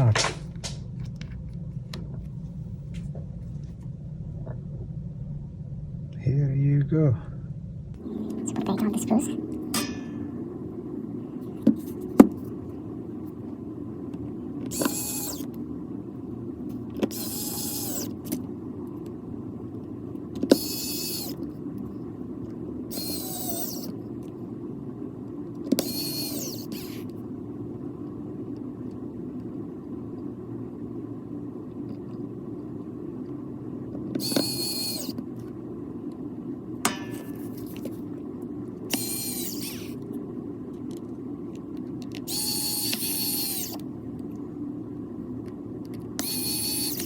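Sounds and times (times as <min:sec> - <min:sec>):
steady low hum: 0:00.0 - 0:47.0
electric screwdriver whirring: 0:14.7 - 0:15.6, 0:17.0 - 0:18.4, 0:20.4 - 0:21.5, 0:22.9 - 0:24.0, 0:25.6 - 0:27.2, 0:34.2 - 0:35.2, 0:38.9 - 0:40.0, 0:42.1 - 0:43.8, 0:46.2 - 0:47.0.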